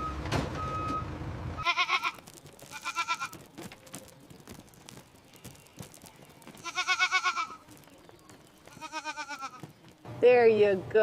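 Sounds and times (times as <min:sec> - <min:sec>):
vehicle reversing beeper: 0:00.0 - 0:01.2
engine rumble: 0:00.0 - 0:11.0
goat bleating: 0:01.6 - 0:03.5, 0:06.0 - 0:07.8, 0:08.6 - 0:09.7.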